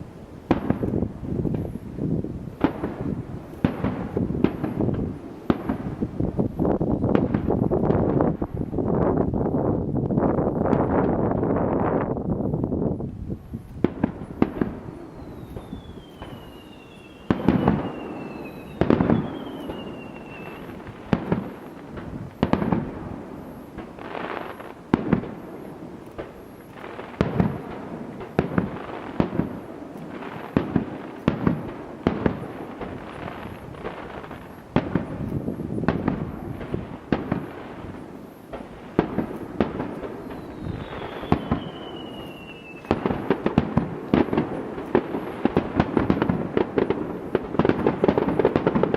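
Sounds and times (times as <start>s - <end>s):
firework shells bursting: 0.4s - 8.4s, 13.6s - 48.9s
firework whistles falling: 13.6s - 48.9s.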